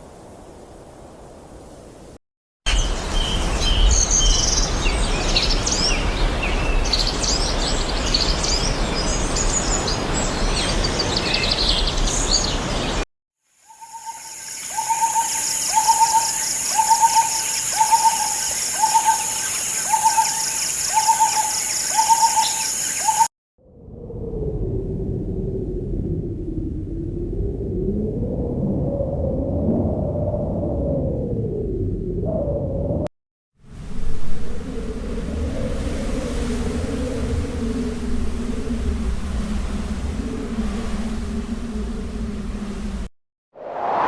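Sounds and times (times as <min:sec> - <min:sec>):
wind with low rumble: 0:00.0 - 0:13.0, 0:23.6 - 0:44.0
birds chirping: 0:02.7 - 0:13.0, 0:13.7 - 0:23.3
bird call: 0:13.7 - 0:23.3.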